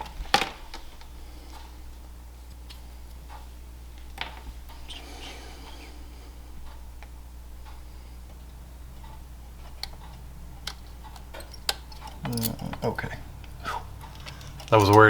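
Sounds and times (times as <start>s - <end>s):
low steady hum: 0.0s - 15.0s
light clicks and taps of parts: 9.0s - 15.0s.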